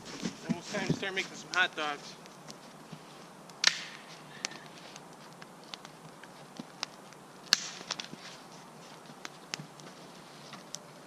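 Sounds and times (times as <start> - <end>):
dry twigs snapping and rustling: 0.0 - 11.0
sharp twig crack: 3.4 - 8.5.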